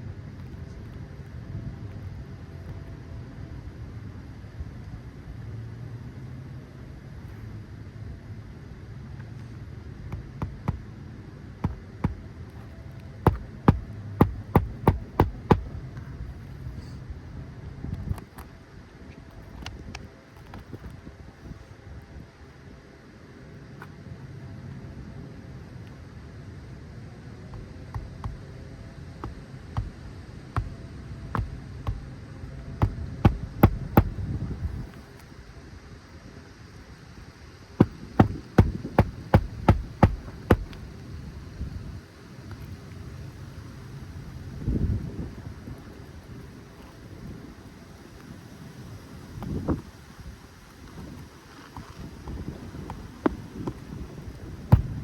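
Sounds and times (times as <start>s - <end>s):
steady low hum: 0.0s - 55.0s
hammer hitting nails: 13.3s - 15.7s, 32.8s - 34.2s, 37.8s - 40.8s.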